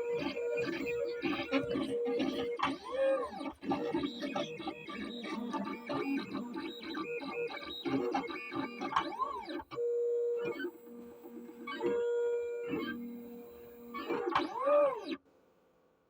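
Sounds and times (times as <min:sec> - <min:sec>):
warbling machine motors: 0:00.0 - 0:15.2.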